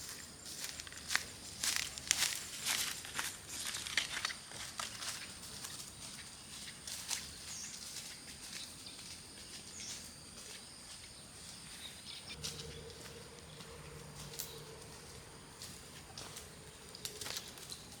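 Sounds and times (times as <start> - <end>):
low steady hum: 12.1 - 18.0
steady high-pitched drone: 12.3 - 17.7.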